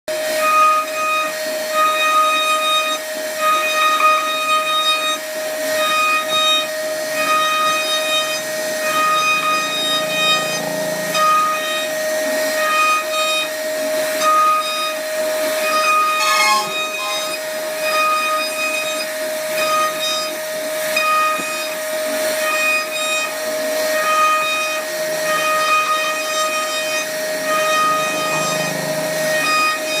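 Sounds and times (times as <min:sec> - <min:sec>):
router spindle whining: 0:00.2 - 0:30.0
higher-pitched tones: 0:08.2 - 0:11.7, 0:15.8 - 0:17.4.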